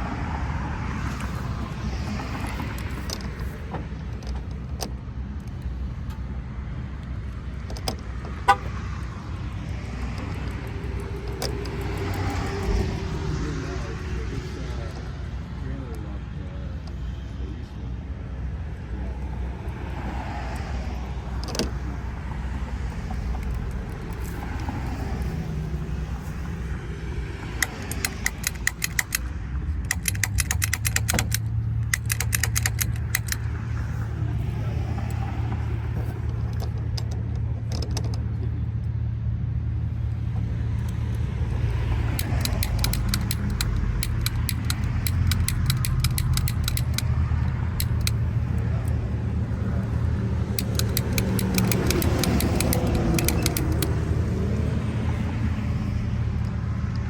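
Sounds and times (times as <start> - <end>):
vehicle engine running: 0.0 - 57.0
pick gun clicking on padlock: 9.9 - 13.2, 27.5 - 33.5, 42.0 - 48.5, 50.6 - 54.2.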